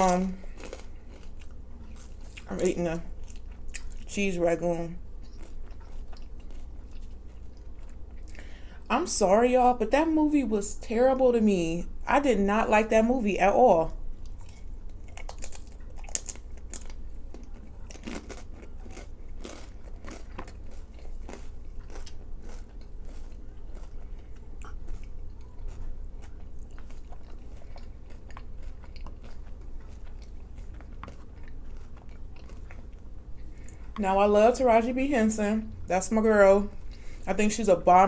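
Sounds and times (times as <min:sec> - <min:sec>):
person chewing crunchy food: 0:00.0 - 0:04.2, 0:05.0 - 0:08.9, 0:14.1 - 0:34.0
steady low hum: 0:00.0 - 0:38.0.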